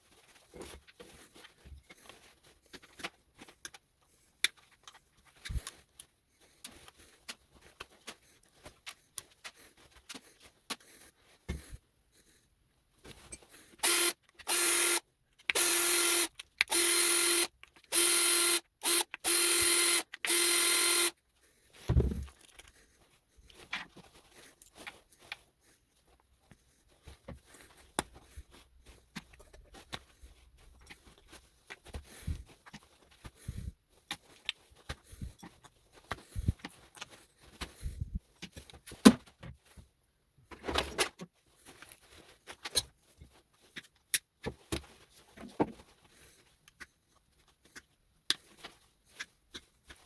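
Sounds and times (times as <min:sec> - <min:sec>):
power tool bursts: 0:13.8 - 0:21.1.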